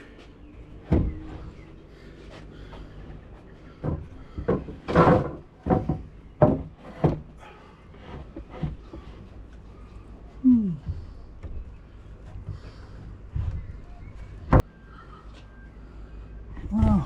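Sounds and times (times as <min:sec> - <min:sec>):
heavy timber slabs knocking: 0:03.8 - 0:07.3.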